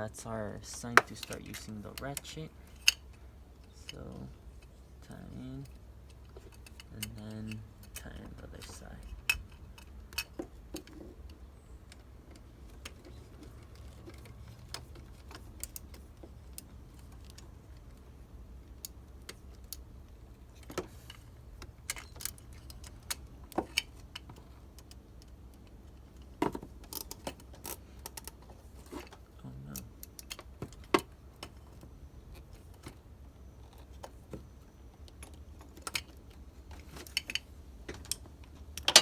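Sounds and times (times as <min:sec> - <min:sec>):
low steady hum: 0:00.0 - 0:39.0.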